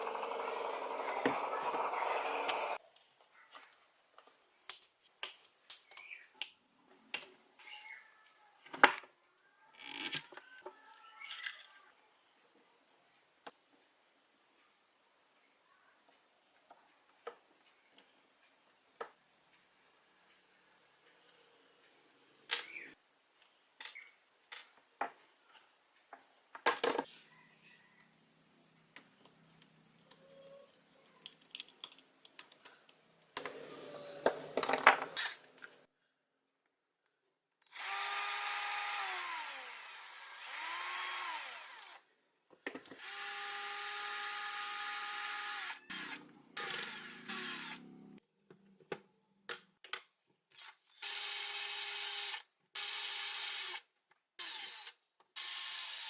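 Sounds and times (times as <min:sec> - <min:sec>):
power drill-driver running: 0:00.0 - 0:02.8, 0:37.7 - 0:42.0, 0:43.0 - 0:48.0, 0:50.6 - 0:53.8, 0:54.4 - 0:56.0
metal and plastic parts clicking: 0:31.2 - 0:33.5.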